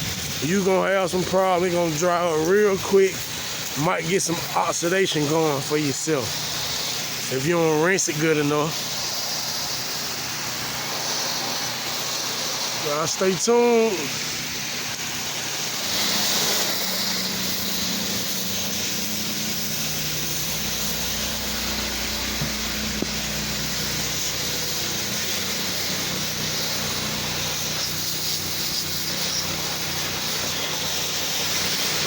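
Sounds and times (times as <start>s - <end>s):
motor humming: 0.0s - 32.0s
pressure washer spraying water: 0.0s - 32.0s.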